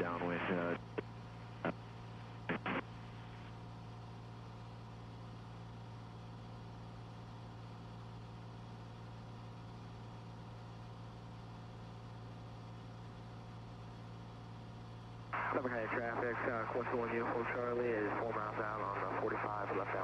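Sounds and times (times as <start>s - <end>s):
radio clicks: 2.5s - 2.9s.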